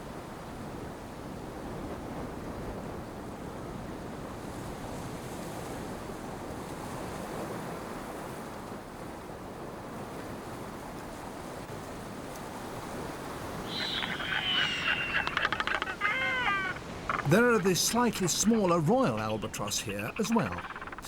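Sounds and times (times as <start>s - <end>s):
wind: 0.0s - 21.0s
ocean waves: 9.9s - 21.0s.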